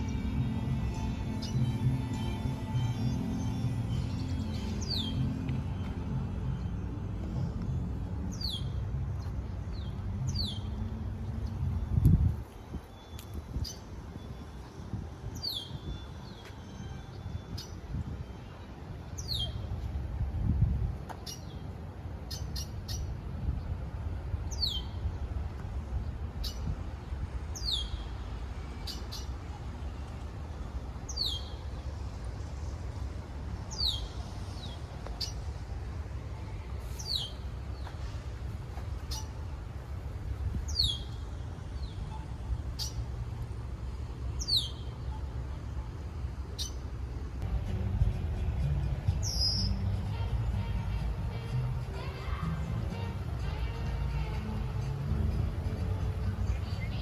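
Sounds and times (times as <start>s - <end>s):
birds chirping: 0.0s - 11.9s, 38.8s - 40.0s, 40.6s - 43.1s, 44.3s - 45.4s, 49.2s - 57.0s
steady low rumble: 0.0s - 57.0s.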